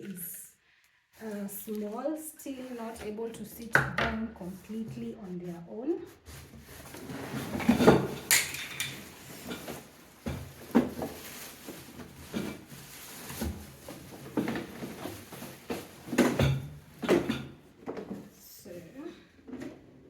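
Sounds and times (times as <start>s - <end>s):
packaging rustling: 6.3s - 16.3s
knocks and scrapes of handled parts: 6.3s - 18.3s.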